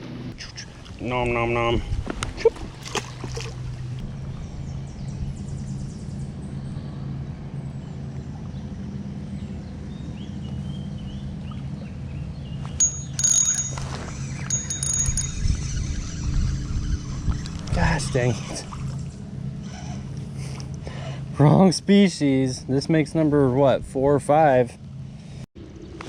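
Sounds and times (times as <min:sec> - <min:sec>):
low motor hum: 0:00.0 - 0:26.0
faint bird chirps: 0:00.4 - 0:00.8
fishing reel whirring: 0:12.8 - 0:20.4.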